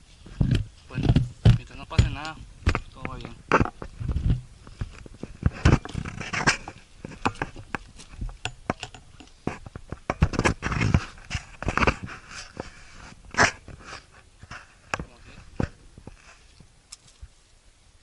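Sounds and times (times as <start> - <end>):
footsteps crunching on gravel: 0.0 - 8.4
scrapes and knocks: 0.2 - 16.5.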